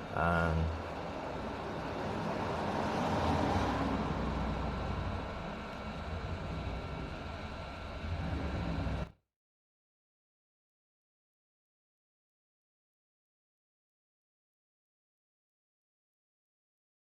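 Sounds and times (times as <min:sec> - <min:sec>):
hot air blower rushing: 0:00.0 - 0:09.1
faint steady whine: 0:00.0 - 0:09.2.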